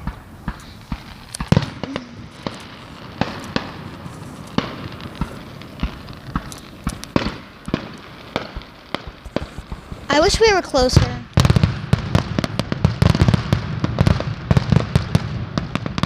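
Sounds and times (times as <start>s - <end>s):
distant fireworks popping and banging: 0.0s - 16.0s.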